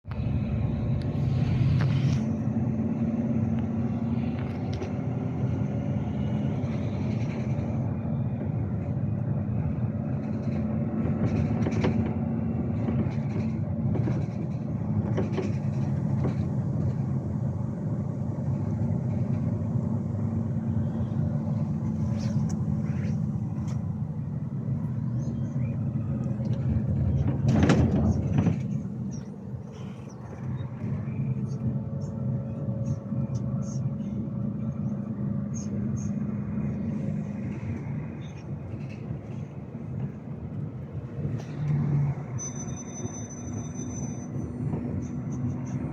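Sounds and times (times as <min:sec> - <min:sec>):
coach diesel engine droning: 0:00.0 - 0:45.9.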